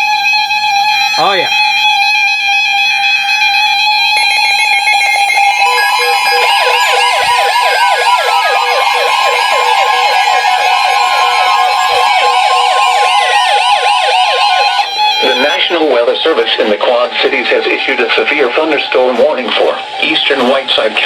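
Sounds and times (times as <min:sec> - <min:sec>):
steady alarm tone: 0:00.0 - 0:21.0
digital alert-header bursts: 0:04.1 - 0:20.5
fast warbling siren alerts: 0:04.1 - 0:20.6.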